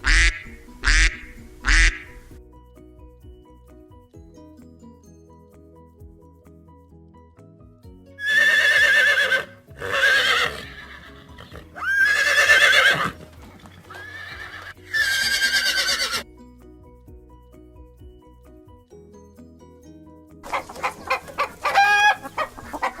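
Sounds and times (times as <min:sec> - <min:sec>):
soft background music: 0:00.0 - 0:23.0
horse neighing: 0:08.2 - 0:16.2, 0:21.1 - 0:23.0.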